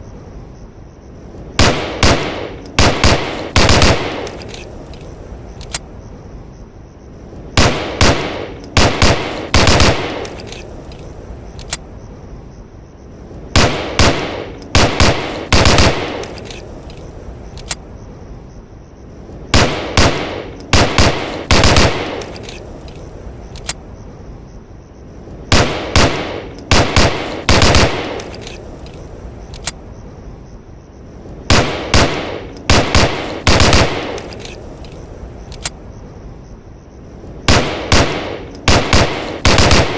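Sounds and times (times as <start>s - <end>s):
pistol shots with ringing tail: 1.6s - 4.4s, 7.6s - 10.3s, 13.6s - 16.4s, 19.6s - 22.3s, 25.5s - 28.2s, 31.5s - 34.3s, 37.5s - 39.9s.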